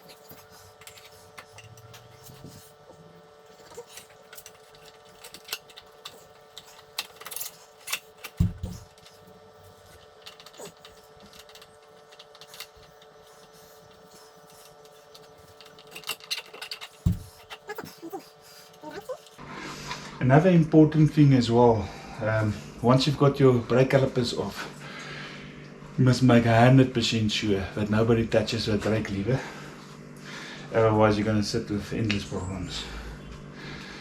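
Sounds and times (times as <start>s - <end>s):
steady hum: 0.0s - 34.0s.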